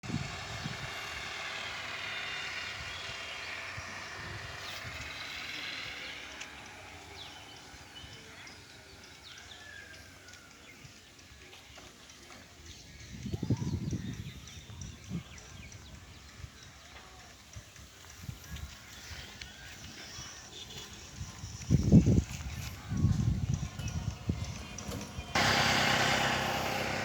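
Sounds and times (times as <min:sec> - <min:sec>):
engine running: 0:00.0 - 0:13.0, 0:20.6 - 0:27.0.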